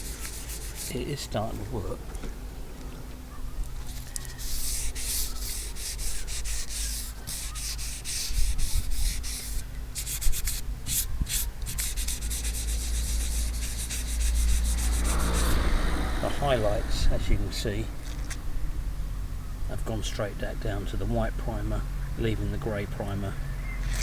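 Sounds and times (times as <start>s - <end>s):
wet sanding strokes: 0.0s - 1.3s, 4.2s - 15.8s.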